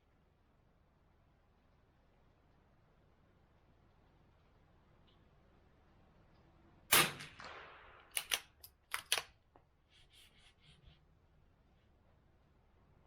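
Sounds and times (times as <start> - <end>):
rifle shot with echo: 6.9 - 8.4
rifle bolt metallic clicks: 7.2 - 9.3.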